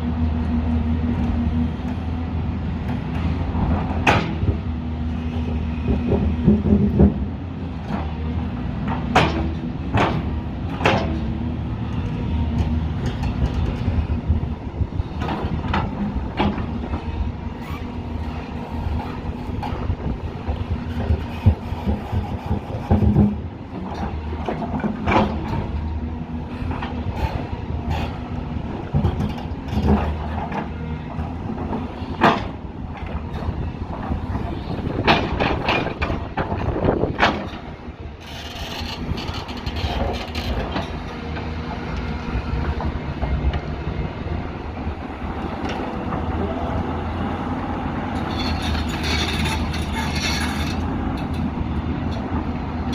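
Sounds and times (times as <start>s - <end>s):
diesel engine under load: 0.0s - 52.9s
machine knocks and clanks: 2.8s - 4.6s, 5.8s - 8.2s, 8.8s - 17.1s, 18.6s - 41.5s.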